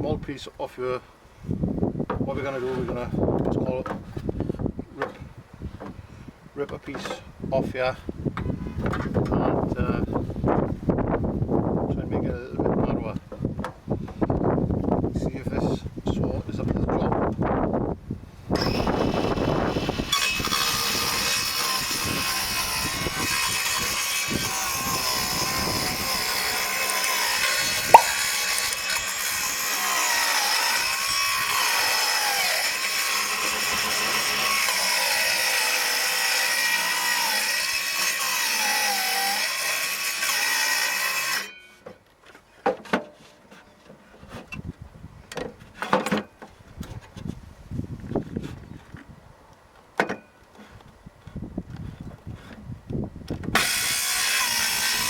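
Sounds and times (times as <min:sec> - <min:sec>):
circular saw cutting wood: 0:18.6 - 0:41.6, 0:53.6 - 0:55.0.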